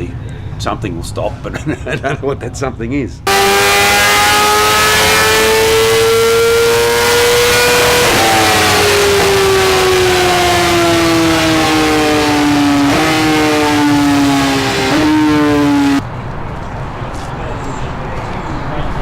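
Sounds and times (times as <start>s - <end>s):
motorcycle engine at high revs: 3.3s - 16.0s.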